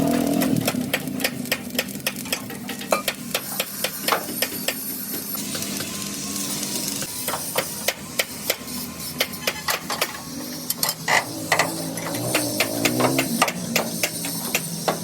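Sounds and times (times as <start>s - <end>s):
hammer striking steel: 0.0s - 6.0s, 7.1s - 15.0s.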